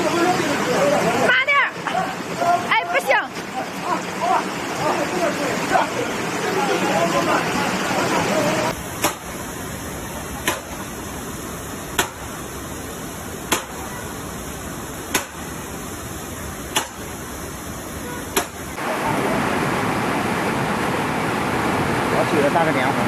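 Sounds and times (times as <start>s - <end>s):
rush of water: 0.0s - 23.0s
steady rushing noise: 0.0s - 23.0s
sharp cracks: 15.1s - 15.4s, 16.7s - 17.0s.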